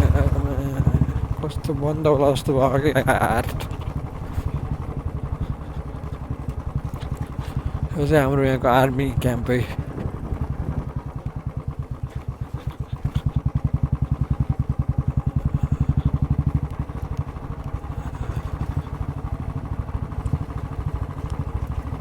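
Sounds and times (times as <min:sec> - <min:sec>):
motorcycle engine running: 0:00.0 - 0:22.0.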